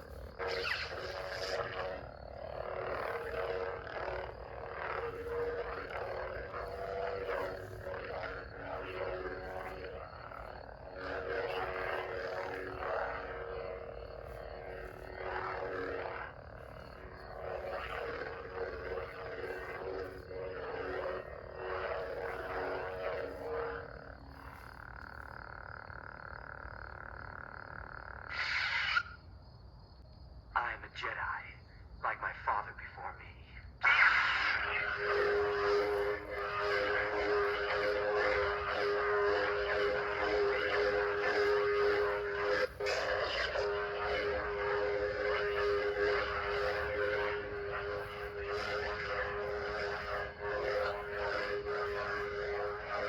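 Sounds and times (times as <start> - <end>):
lightsaber swing sounds: 0.0 - 16.3, 34.0 - 53.0
lightsaber humming: 0.0 - 29.2, 33.8 - 53.0.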